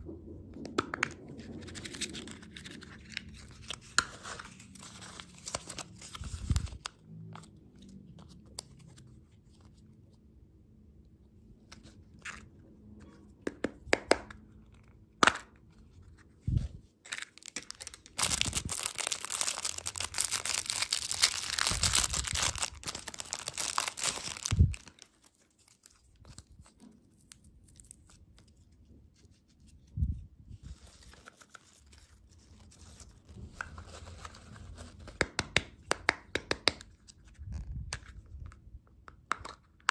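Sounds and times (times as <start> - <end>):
packaging tearing and crinkling: 1.7 - 7.0, 17.1 - 28.2.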